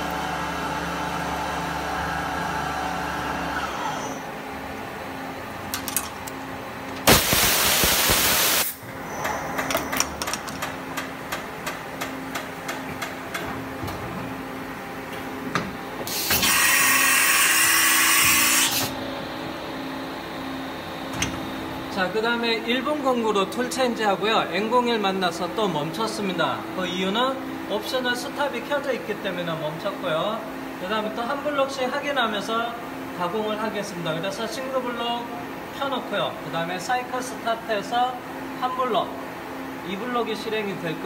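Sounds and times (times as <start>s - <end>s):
loud hissing bursts: 7.1s - 8.8s.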